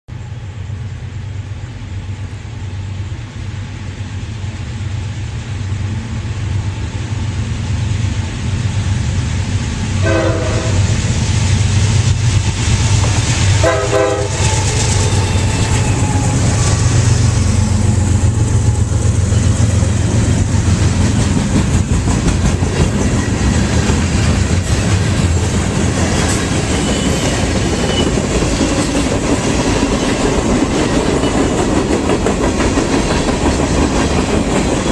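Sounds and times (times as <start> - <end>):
diesel locomotive engines droning: 0.1 - 34.9
train horn blasts: 10.0 - 11.0, 13.6 - 16.6
wheels clacking over rail joints: 12.0 - 34.9.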